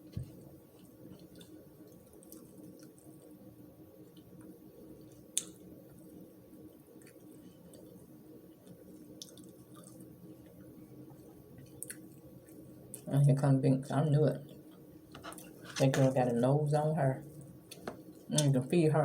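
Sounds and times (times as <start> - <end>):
low steady hum: 0.0 - 19.0
person chewing: 0.2 - 3.3, 7.0 - 13.0.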